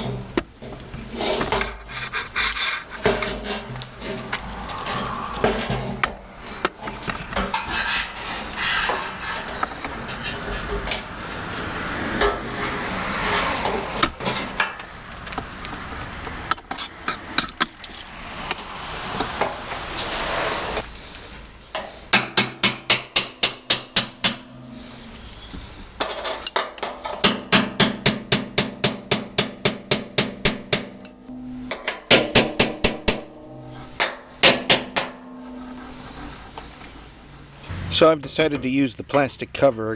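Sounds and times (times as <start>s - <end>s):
scraping and rubbing: 0.7s - 11.1s, 19.8s - 20.8s.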